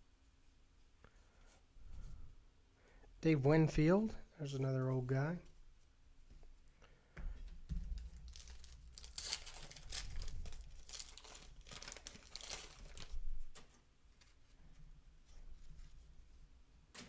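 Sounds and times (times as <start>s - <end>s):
paper rustling and crinkling: 7.7s - 14.6s.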